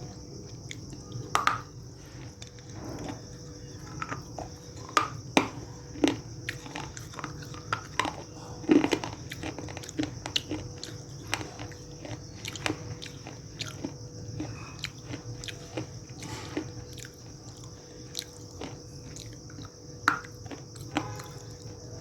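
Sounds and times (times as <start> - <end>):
person chewing crunchy clay: 0.0 - 22.0.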